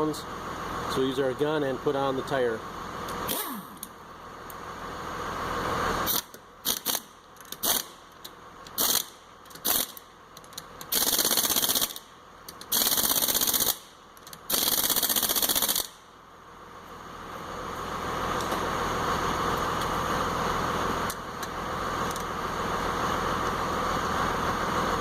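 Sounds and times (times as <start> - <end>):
impact wrench hammering lug nuts: 6.1 - 8.0, 8.7 - 16.0.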